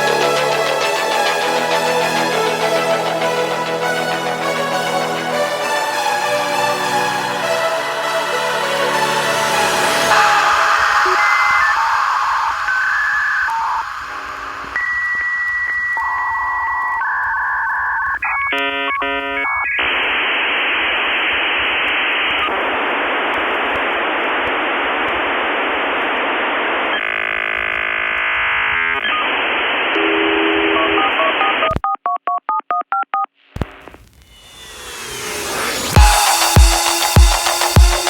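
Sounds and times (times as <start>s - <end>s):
harsh modem hiss: 0.0s - 31.7s, 33.5s - 38.0s
dial-up modem tones: 10.1s - 33.8s
dialing beeps: 10.2s - 19.9s, 30.0s - 33.3s.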